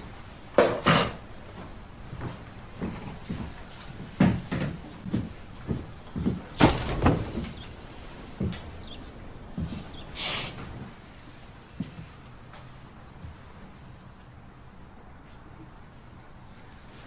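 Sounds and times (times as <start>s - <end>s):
knocks and thumps: 4.2s - 7.8s.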